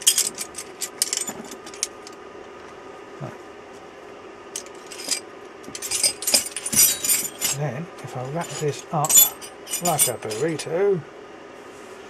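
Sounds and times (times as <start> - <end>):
tools clicking and rustling: 0.0 - 2.2, 4.6 - 7.6, 8.4 - 10.6
steady low hum: 0.0 - 12.0.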